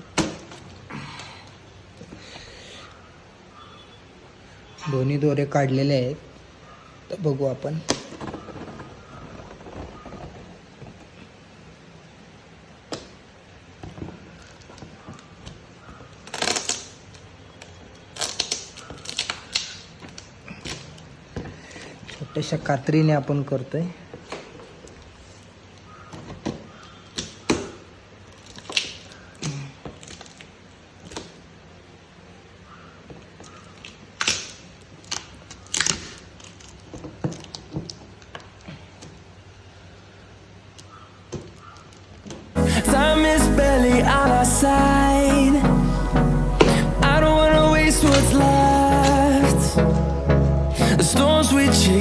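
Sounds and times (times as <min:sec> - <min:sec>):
packaging crackling: 0:07.8 - 0:11.3, 0:13.8 - 0:22.3, 0:28.2 - 0:31.5, 0:33.1 - 0:38.7
clicks: 0:42.9 - 0:52.0.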